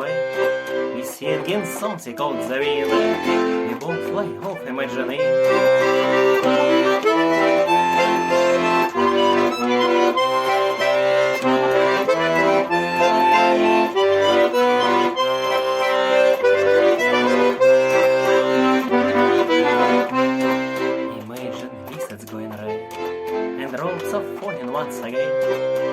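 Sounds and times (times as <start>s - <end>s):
instrumental melody with chords: 0.0s - 25.9s
steady bass line: 5.2s - 21.1s.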